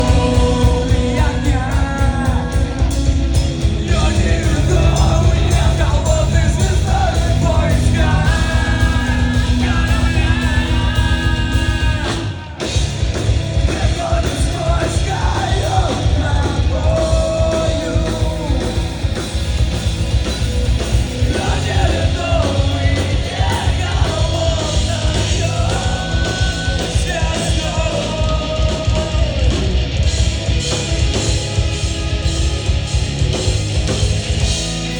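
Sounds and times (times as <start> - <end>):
rock band playing live: 0.0 - 34.9
person shouting singing: 3.8 - 12.7.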